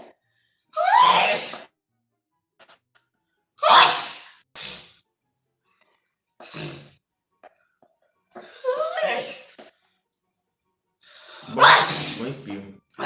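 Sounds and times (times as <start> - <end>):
person sneezing: 3.6 - 5.0.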